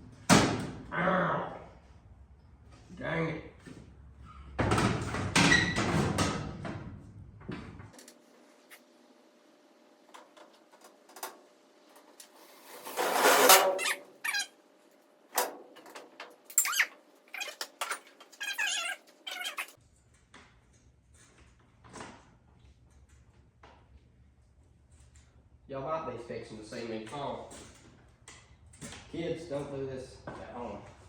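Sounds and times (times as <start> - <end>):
loud metal scrape: 12.4 - 14.4
squeaky scrape: 12.4 - 14.5, 16.6 - 19.8.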